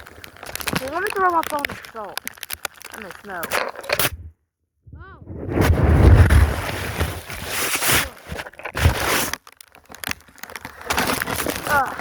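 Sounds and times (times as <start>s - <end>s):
rustling: 0.0s - 4.3s, 5.0s - 12.0s
low buffeting: 4.1s - 7.0s
muffled snow crunching: 5.0s - 9.2s.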